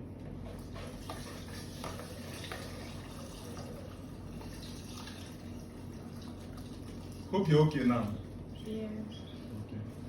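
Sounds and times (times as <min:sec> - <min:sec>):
water trickling into container: 0:01.0 - 0:08.1.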